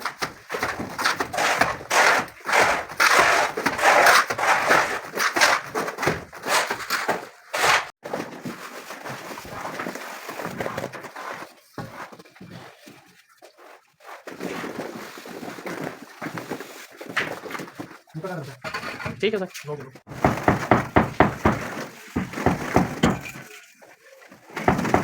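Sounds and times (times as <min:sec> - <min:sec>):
trowel scraping plaster: 0:00.0 - 0:08.0.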